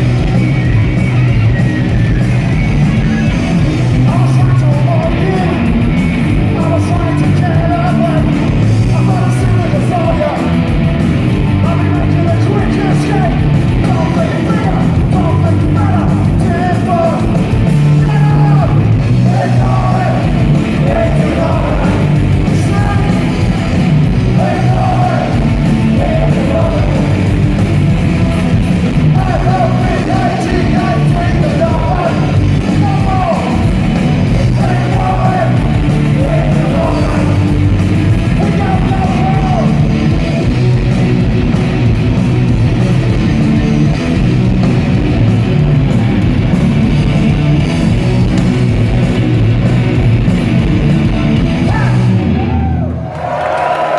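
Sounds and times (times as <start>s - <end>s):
punk rock band playing: 0.0s - 53.4s.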